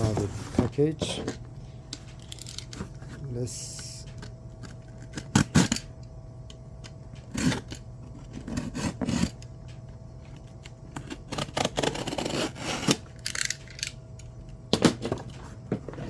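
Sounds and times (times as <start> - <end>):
package scraping and rustling: 0.0 - 1.4.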